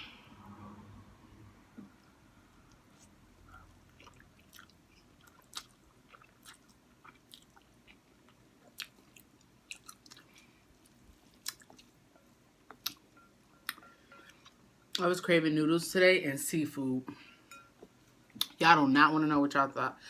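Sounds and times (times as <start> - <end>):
person chewing noodles: 2.0 - 14.6.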